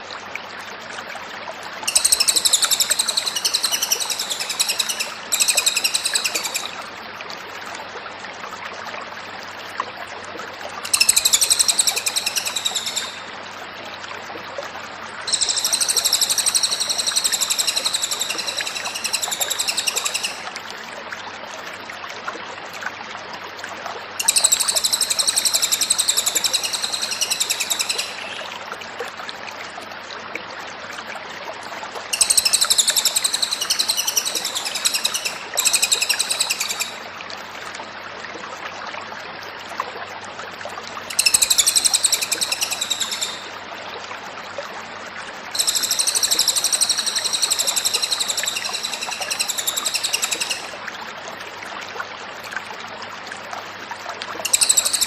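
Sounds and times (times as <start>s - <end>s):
songbird singing rapidly: 1.9s - 6.8s, 10.9s - 13.2s, 15.3s - 20.4s, 24.2s - 28.4s, 32.2s - 37.0s, 41.1s - 43.5s, 45.6s - 50.7s, 54.5s - 55.0s.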